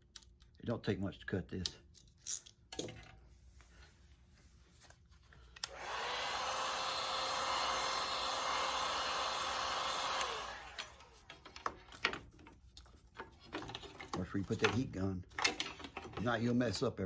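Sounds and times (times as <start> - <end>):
heat gun fan whine: 5.6 - 11.6.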